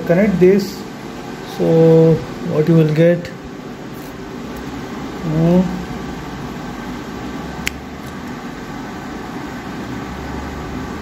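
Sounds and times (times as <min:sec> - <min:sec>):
steady fan hum: 0:00.0 - 0:11.0
sharp click: 0:07.6 - 0:08.2.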